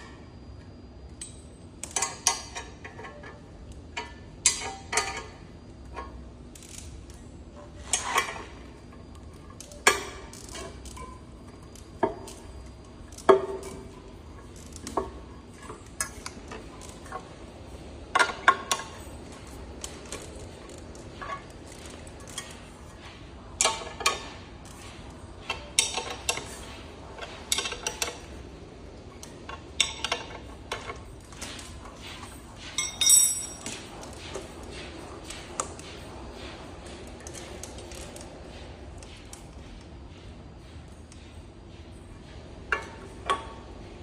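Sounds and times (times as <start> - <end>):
metal tools clanking: 29.2 - 38.2.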